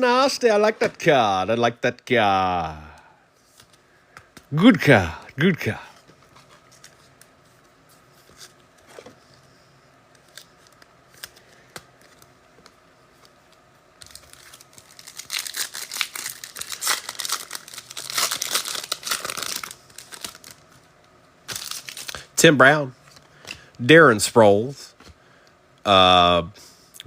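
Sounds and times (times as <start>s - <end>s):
plastic wrapper tearing and crinkling: 10.2s - 12.3s, 13.5s - 20.8s, 21.5s - 22.3s.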